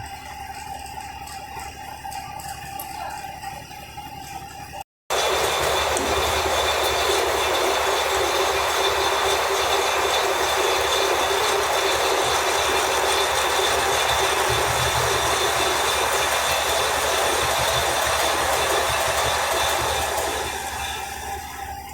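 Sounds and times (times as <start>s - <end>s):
lathe whining: 5.1s - 21.9s.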